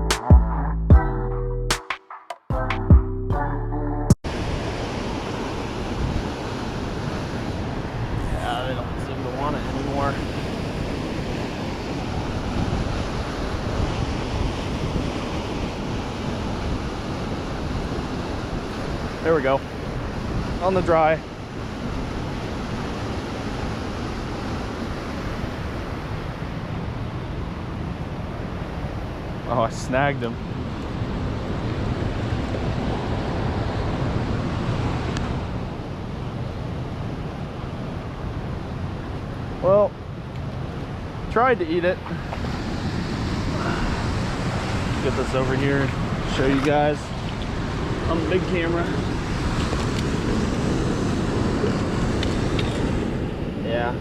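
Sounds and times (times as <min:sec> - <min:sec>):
waterfall and creek rushing: 0:04.3 - 0:26.0, 0:41.3 - 0:53.9
waterfall rushing: 0:41.6 - 0:51.9.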